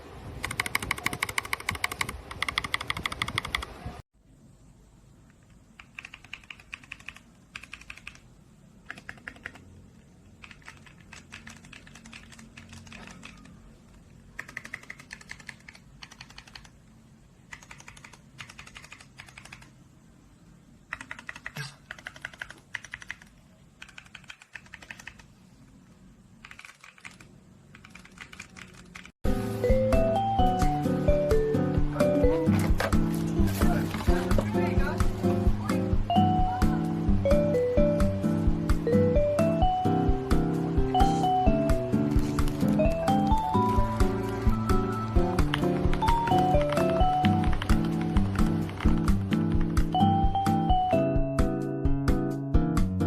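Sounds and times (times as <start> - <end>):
typing on mechanical keyboard: 0.4 - 3.8, 5.8 - 9.7, 10.4 - 13.6, 14.3 - 16.8, 17.5 - 19.7, 20.9 - 25.3, 26.4 - 29.2, 45.4 - 49.9.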